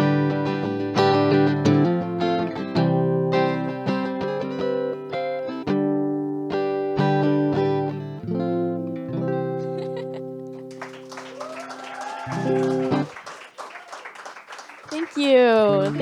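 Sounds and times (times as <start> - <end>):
strummed guitar chords: 0.0 - 10.7.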